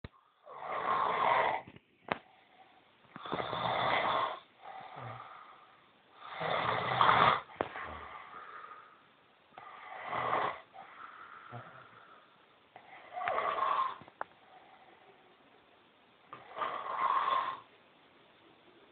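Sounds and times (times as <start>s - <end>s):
quiet breaths: 0.0s - 18.9s
loud snoring: 0.4s - 1.7s, 3.2s - 5.6s, 6.2s - 8.3s, 9.6s - 12.0s, 12.8s - 15.0s, 16.3s - 17.7s.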